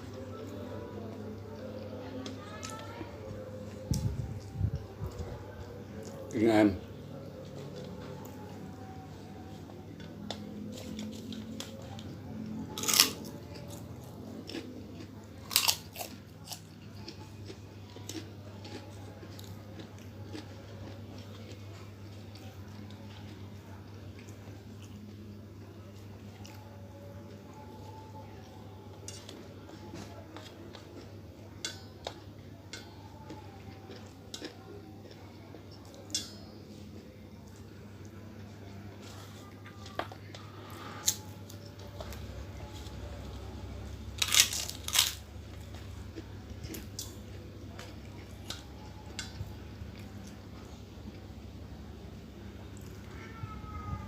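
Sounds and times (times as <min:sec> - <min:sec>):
low steady hum: 0:00.0 - 0:54.0
quiet chewing and crackling: 0:00.0 - 0:54.0
loud crunches of fried food: 0:12.7 - 0:13.3, 0:15.4 - 0:17.2, 0:44.0 - 0:45.2.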